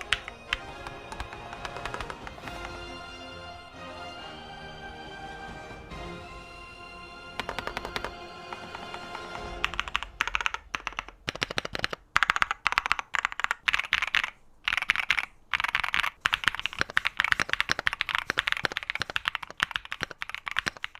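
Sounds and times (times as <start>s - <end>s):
mechanical keyboard key clicks: 7.4s - 20.9s.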